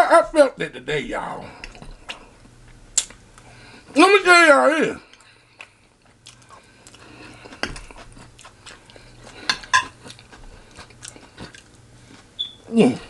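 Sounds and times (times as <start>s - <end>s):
person chewing food: 1.6s - 3.8s, 5.1s - 13.0s.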